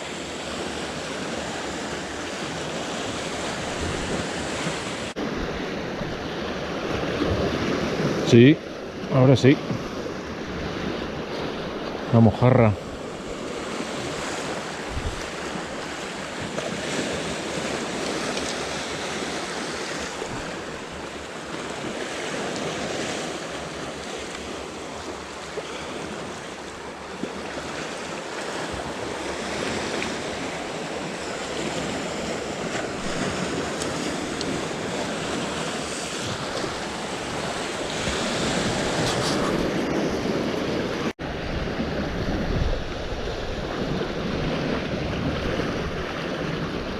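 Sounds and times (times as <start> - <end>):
sea waves washing in: 0.0 - 46.9
wind blowing on microphone: 2.0 - 20.8, 28.6 - 46.9.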